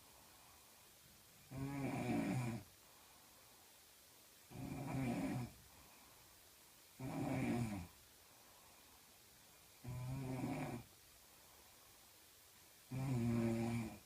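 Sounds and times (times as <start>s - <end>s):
quiet breathing: 0.0s - 14.0s
woman snoring: 1.4s - 2.7s, 4.5s - 5.6s, 7.0s - 8.0s, 9.8s - 10.9s, 12.9s - 14.0s.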